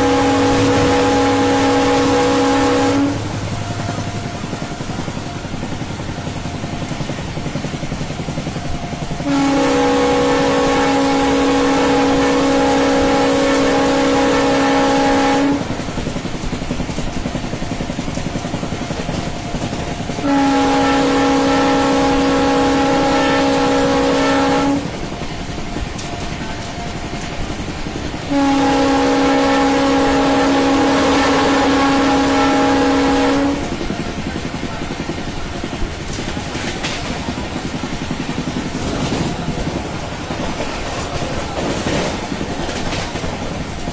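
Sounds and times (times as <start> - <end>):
locomotive horn blasts: 0.0 - 5.8, 9.2 - 15.9, 20.1 - 25.2, 28.2 - 34.3
train running noise: 0.0 - 43.9.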